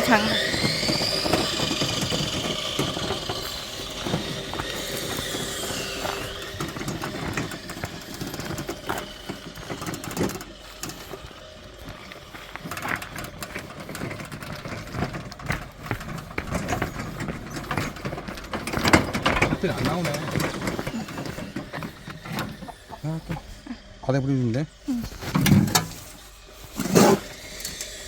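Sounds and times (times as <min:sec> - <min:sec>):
engine whine winding down: 0:00.0 - 0:28.0
knocks and clatter: 0:12.6 - 0:23.0.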